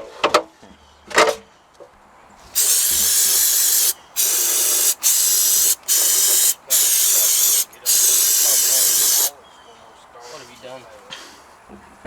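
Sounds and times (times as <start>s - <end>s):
spray nozzle hissing: 2.6s - 9.3s.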